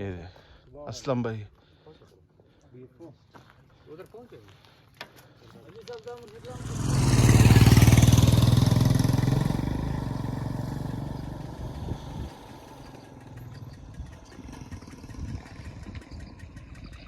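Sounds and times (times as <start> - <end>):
motorcycle engine running: 6.3 - 17.0
clatter: 12.4 - 17.0.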